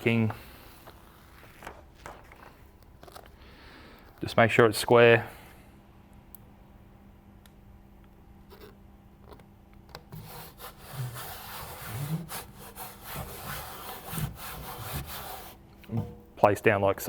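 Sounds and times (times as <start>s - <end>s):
foam mat rubbing and scraping: 10.2s - 15.6s.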